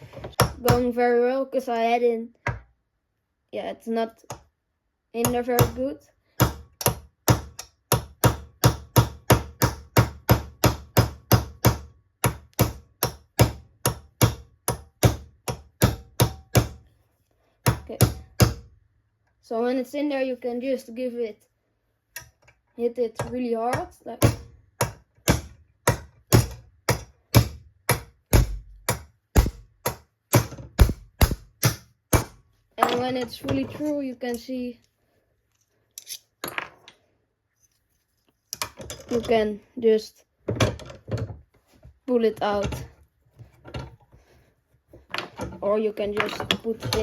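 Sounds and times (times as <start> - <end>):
hammer striking metal: 24.2 - 33.1.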